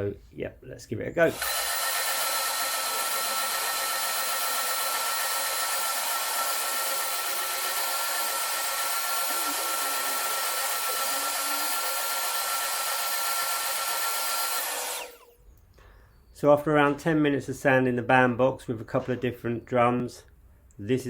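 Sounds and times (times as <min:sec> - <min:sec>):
sander motor hiss and whine: 0:01.3 - 0:15.4.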